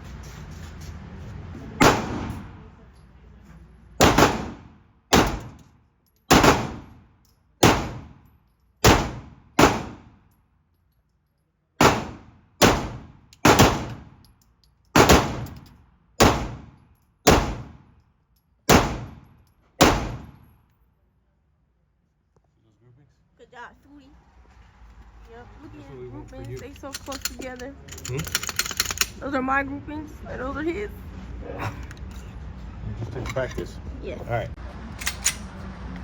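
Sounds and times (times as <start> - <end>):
gunshots with echo: 1.8 - 2.6, 4.0 - 5.6, 6.3 - 6.9, 7.6 - 8.1, 8.8 - 10.1, 11.8 - 14.1, 15.0 - 15.5, 16.2 - 16.7, 17.3 - 17.8, 18.7 - 19.2, 19.8 - 20.4.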